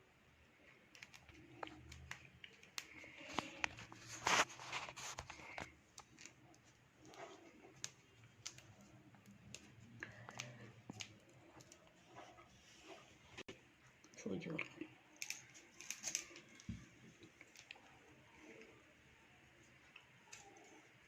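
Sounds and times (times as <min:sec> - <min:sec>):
cloth rustling: 0:03.0 - 0:13.5.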